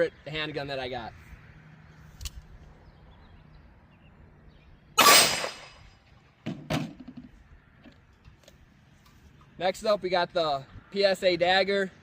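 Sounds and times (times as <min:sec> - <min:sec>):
revolver gunshot: 0:05.0 - 0:05.9.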